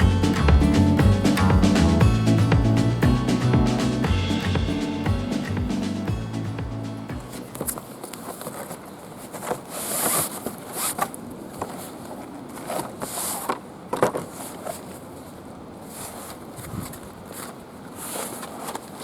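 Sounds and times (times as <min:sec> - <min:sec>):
packaging rustling and scraping: 0:07.4 - 0:19.0.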